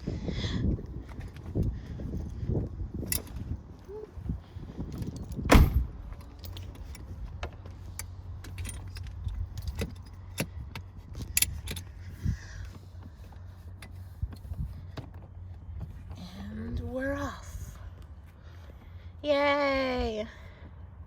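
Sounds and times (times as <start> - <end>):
metal latches and buckles clinking: 1.1 - 12.8
loud thump: 5.5 - 6.0.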